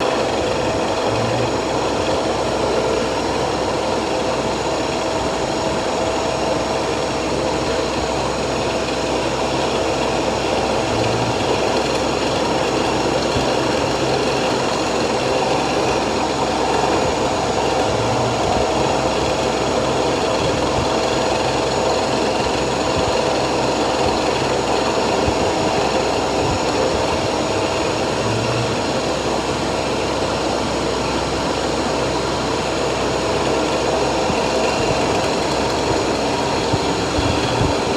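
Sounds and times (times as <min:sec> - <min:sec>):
low hum: 0:00.0 - 0:21.1, 0:25.3 - 0:29.6
milling machine cutting with whine: 0:00.0 - 0:37.9.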